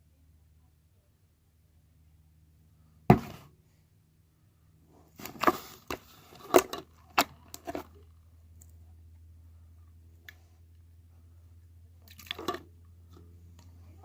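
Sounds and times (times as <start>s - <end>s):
hard objects knocking: 3.1s - 3.4s.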